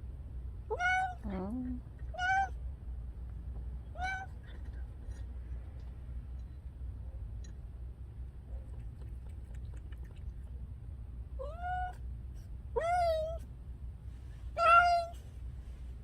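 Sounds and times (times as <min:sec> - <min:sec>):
cat meowing: 0:00.7 - 0:01.2, 0:02.1 - 0:02.6, 0:03.9 - 0:04.5, 0:11.4 - 0:12.0, 0:12.8 - 0:13.4, 0:14.6 - 0:15.2.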